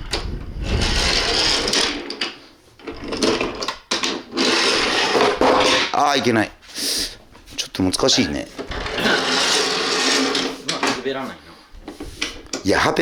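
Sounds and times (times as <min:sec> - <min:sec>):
wheels rattling on wooden track: 0:00.0 - 0:06.3, 0:08.0 - 0:11.4
toy train motor whirring: 0:00.1 - 0:02.3, 0:03.0 - 0:05.8, 0:08.7 - 0:10.8.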